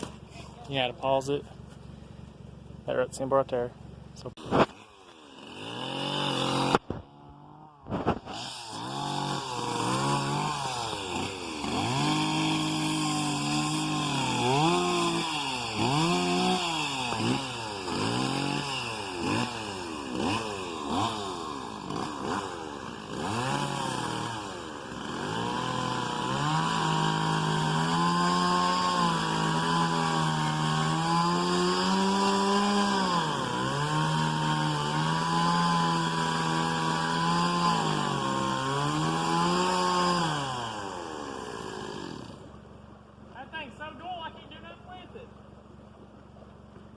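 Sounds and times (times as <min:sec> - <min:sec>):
backhoe diesel engine revving: 0:05.1 - 0:42.5.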